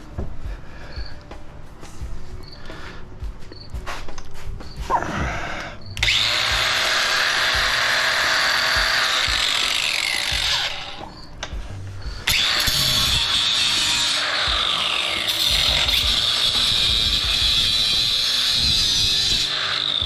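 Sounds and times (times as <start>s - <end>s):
power saw cutting metal: 6.0s - 11.3s, 12.2s - 20.0s.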